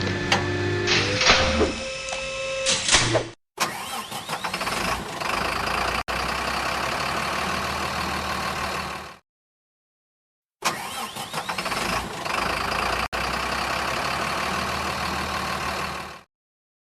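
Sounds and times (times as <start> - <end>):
truck engine cranking and starting: 3.6 - 9.2, 10.6 - 16.3
truck engine running: 4.4 - 9.2, 11.5 - 16.3.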